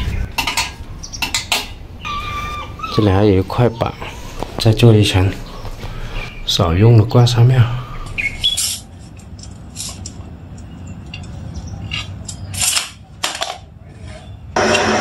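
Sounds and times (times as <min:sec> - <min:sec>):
tools clicking and knocking: 0:08.5 - 0:13.7.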